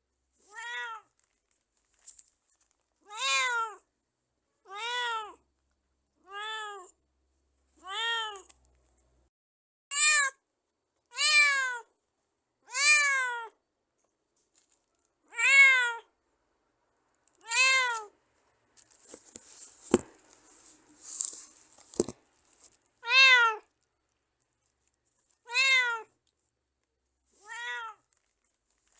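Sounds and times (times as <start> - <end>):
cat meowing: 0.5 - 1.1, 3.0 - 3.8, 4.6 - 5.4, 6.2 - 6.9, 7.8 - 8.5, 11.1 - 11.9, 12.7 - 13.6, 15.3 - 16.1, 17.4 - 18.1, 23.0 - 23.7, 25.4 - 26.1, 27.4 - 28.0
scuffling noise: 18.8 - 22.9.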